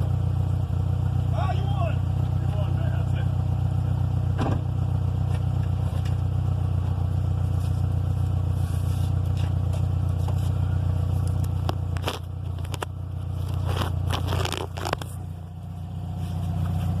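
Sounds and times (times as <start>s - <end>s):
car engine droning: 0.0s - 17.0s
gearbox crunching and scraping: 8.6s - 17.0s.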